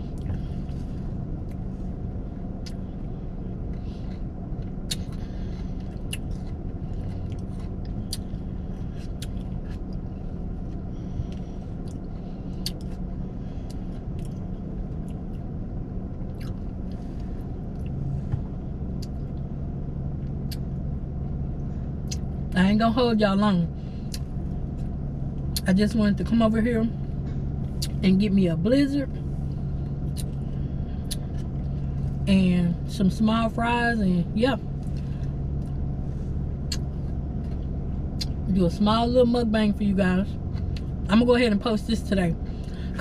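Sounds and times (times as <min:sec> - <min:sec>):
low engine hum: 0:00.0 - 0:43.0
person chewing: 0:03.7 - 0:15.5, 0:16.2 - 0:18.1, 0:24.1 - 0:25.6, 0:30.0 - 0:32.2.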